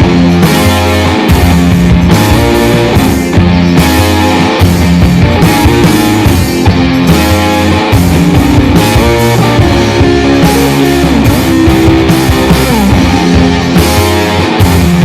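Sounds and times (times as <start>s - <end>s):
rock music with guitar: 0.0s - 15.0s.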